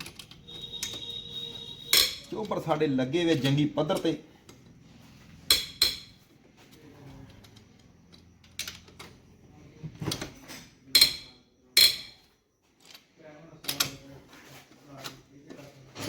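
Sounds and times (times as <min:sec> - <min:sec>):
metal tools clanking: 0:10.0 - 0:13.1.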